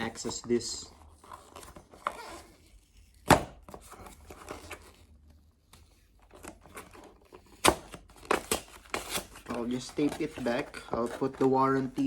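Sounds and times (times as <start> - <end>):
cardboard box rustling: 6.2 - 12.0.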